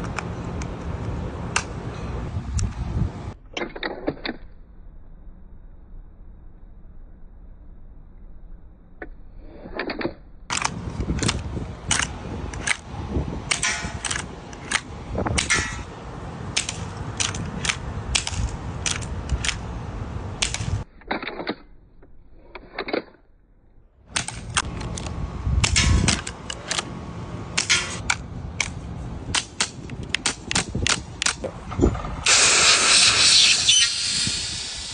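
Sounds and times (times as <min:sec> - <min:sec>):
loud hissing rush: 0:32.1 - 0:34.9.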